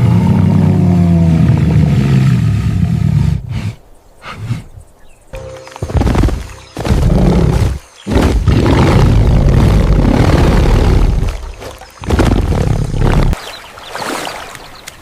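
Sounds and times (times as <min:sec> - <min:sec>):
large wild animal roaring: 0:06.9 - 0:13.4.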